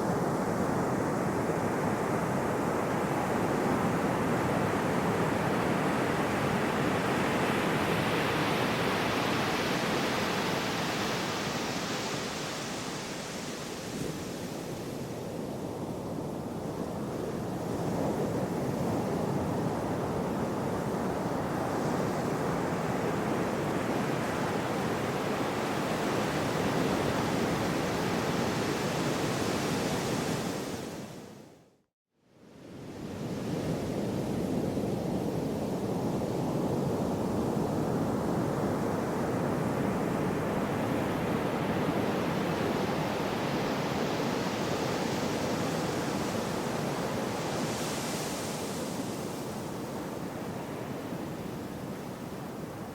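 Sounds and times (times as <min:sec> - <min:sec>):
sea waves washing on shore: 0:00.0 - 0:31.4, 0:32.6 - 0:52.9.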